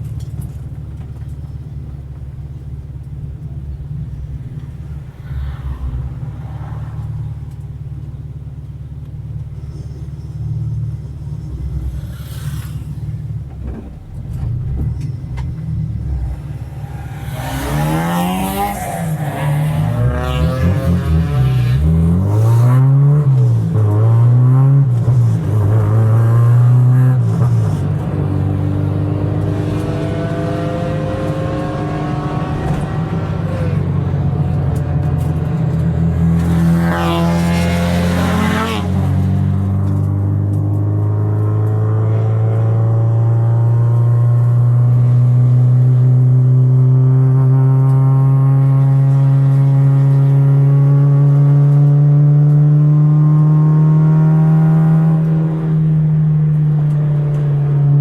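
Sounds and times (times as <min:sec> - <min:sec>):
car engine revving: 0:03.1 - 0:58.0.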